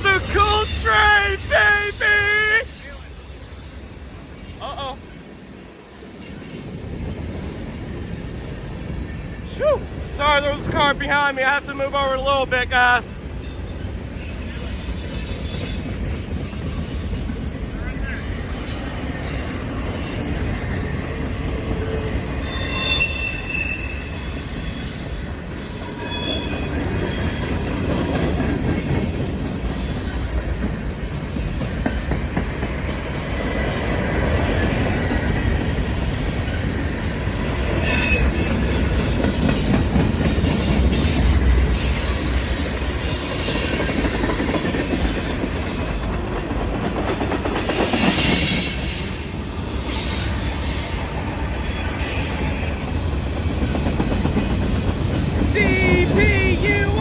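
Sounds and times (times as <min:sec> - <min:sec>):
train cars rolling over rails: 0:00.0 - 0:57.0
high-pitched wheel squeals: 0:22.4 - 0:27.8, 0:37.8 - 0:39.9.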